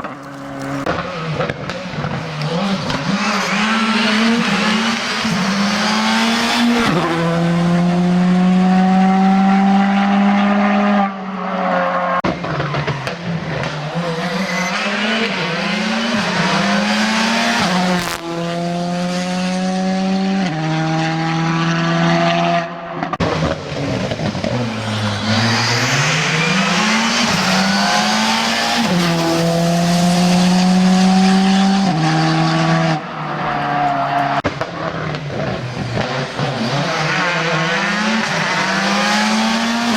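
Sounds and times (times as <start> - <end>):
rally car engines revving: 0.0 - 39.9
tyre squeal: 24.6 - 29.9.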